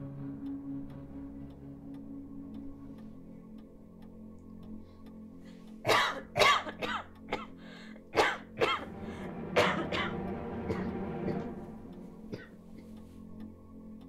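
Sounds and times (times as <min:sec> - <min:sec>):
soft background music: 0:00.0 - 0:14.0
person coughing harshly: 0:05.9 - 0:07.6, 0:08.2 - 0:08.9, 0:09.6 - 0:10.9.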